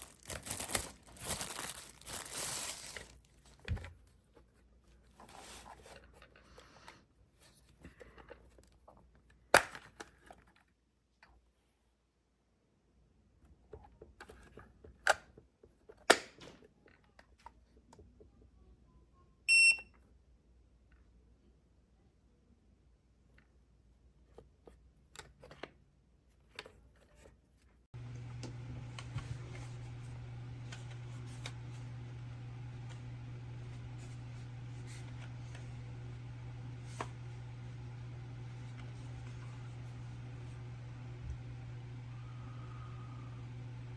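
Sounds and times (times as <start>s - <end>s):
rustling and scraping: 0.0s - 9.1s
steady low hum: 28.0s - 43.9s.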